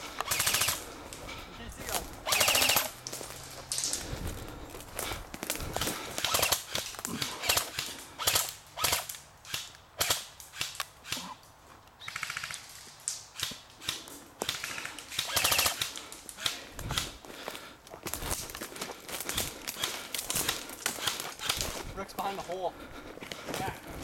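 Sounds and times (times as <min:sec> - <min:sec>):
airsoft gun full-auto bursts: 0:00.2 - 0:00.9, 0:02.2 - 0:03.0, 0:05.8 - 0:11.2, 0:13.4 - 0:17.1, 0:19.4 - 0:21.7.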